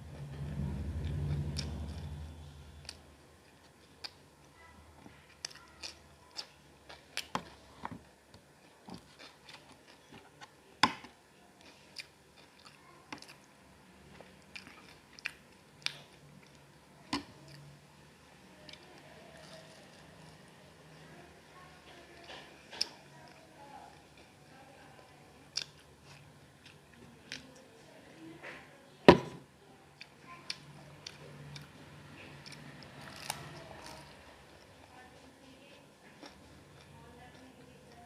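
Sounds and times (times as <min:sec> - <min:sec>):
low hum: 0:00.0 - 0:03.6.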